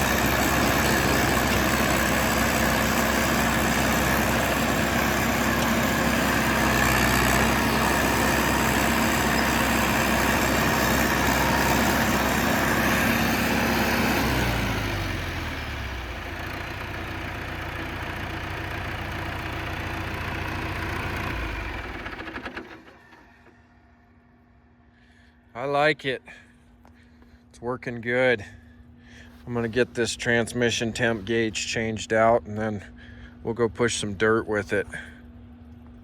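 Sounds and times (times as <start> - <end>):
bulldozer diesel engine: 0.0 - 24.8.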